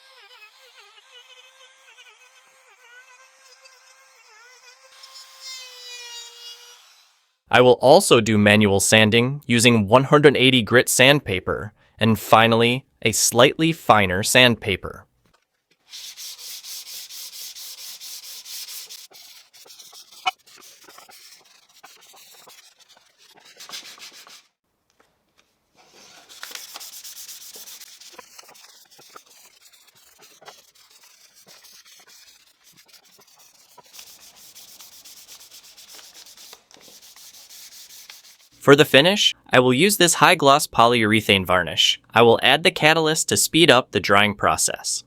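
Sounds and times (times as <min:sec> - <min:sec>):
sandpaper rubbing on wood: 0:00.0 - 0:07.1, 0:15.9 - 0:24.6, 0:25.8 - 0:38.6.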